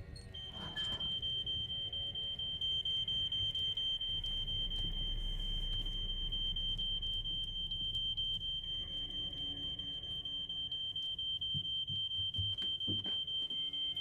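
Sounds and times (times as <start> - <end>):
smoke alarm tone: 0.0 - 14.0
deep low rumble: 2.7 - 10.5.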